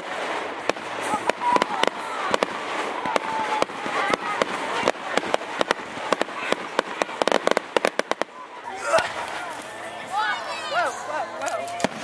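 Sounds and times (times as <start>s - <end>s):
fireworks bangs and pops: 0.0s - 9.8s, 11.7s - 12.0s.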